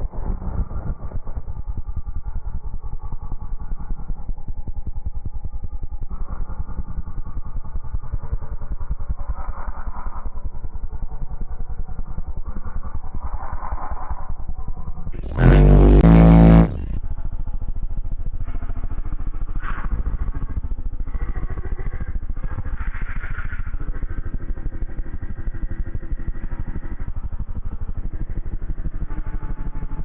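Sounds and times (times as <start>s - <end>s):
vehicle engine idling: 15.3s - 17.0s.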